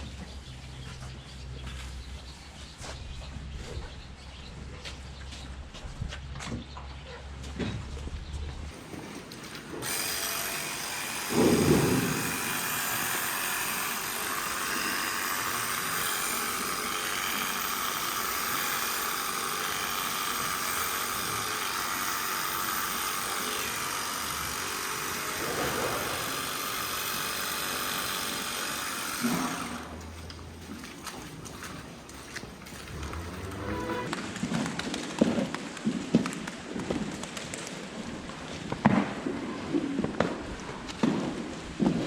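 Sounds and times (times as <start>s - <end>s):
motor-driven machine running: 8.9s - 30.4s.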